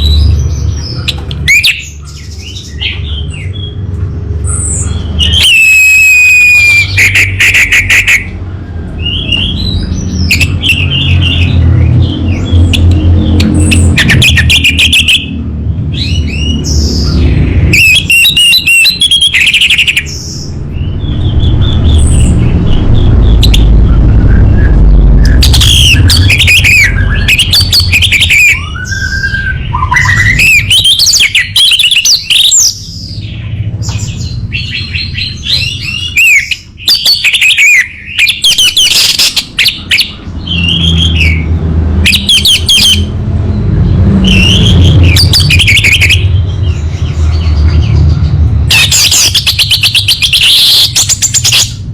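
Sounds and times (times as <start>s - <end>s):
low rumble: 20.1s - 30.8s.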